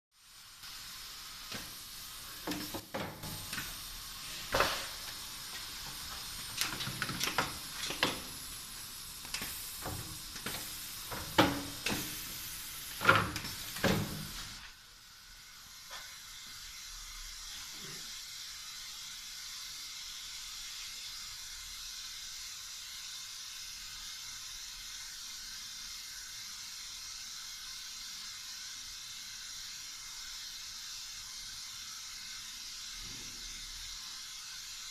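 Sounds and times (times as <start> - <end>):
steady hiss: 0.1 - 34.9
welding machine clacking: 0.7 - 14.8.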